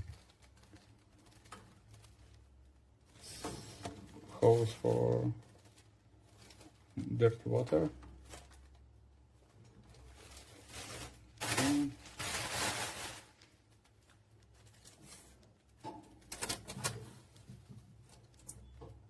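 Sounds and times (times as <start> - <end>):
plastic packaging rustling: 0.0 - 19.0
plastic parts clicking: 15.9 - 17.5.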